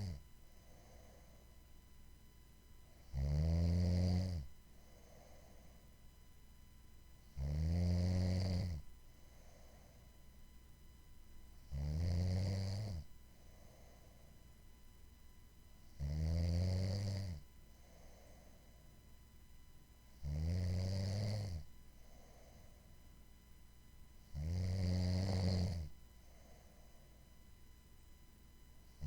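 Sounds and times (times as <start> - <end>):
faint breath: 0.0 - 2.1, 4.6 - 6.1, 9.1 - 10.4, 13.2 - 14.7, 17.6 - 19.2, 21.8 - 23.2, 26.1 - 27.5
person snoring loudly: 3.0 - 4.5, 7.4 - 8.8, 11.7 - 13.0, 16.0 - 17.4, 20.2 - 21.6, 24.3 - 25.9.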